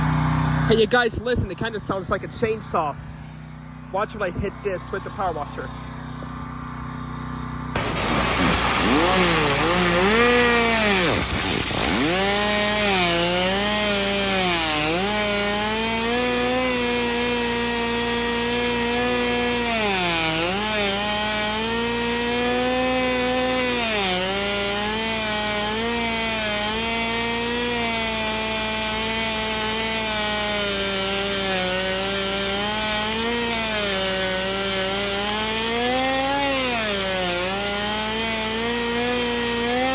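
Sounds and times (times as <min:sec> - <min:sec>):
bike wheel buzzing drone: 0:00.0 - 0:00.8, 0:05.8 - 0:39.9
pressure washer spray hiss: 0:07.8 - 0:11.9.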